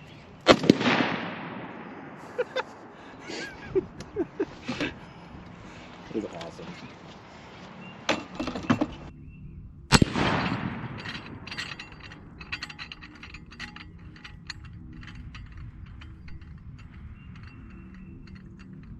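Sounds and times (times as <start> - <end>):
gunshot: 0.5 - 2.2, 9.9 - 11.0
light mechanical clicks and rattles: 9.9 - 18.9.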